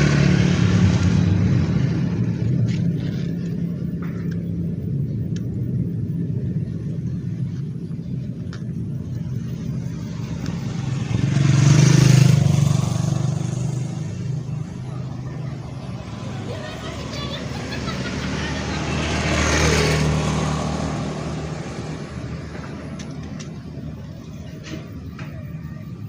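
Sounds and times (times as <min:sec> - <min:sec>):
low motor rumble: 0:00.0 - 0:11.6
vehicle passing close: 0:00.0 - 0:26.0.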